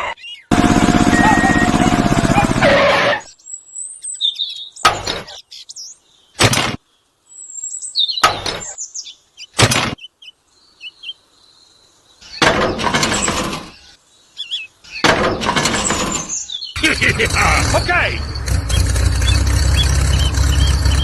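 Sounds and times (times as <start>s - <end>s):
small birds chirping: 0.0s - 2.6s, 3.2s - 21.0s
sharp cracks: 6.4s - 6.8s
rough crashing burst: 15.1s - 21.0s.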